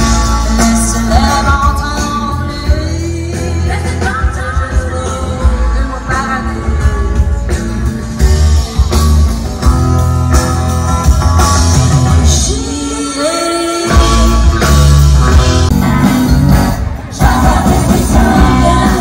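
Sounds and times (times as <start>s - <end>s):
person singing: 0.0s - 8.6s, 12.2s - 14.7s, 17.1s - 19.0s
guitar: 0.0s - 19.0s.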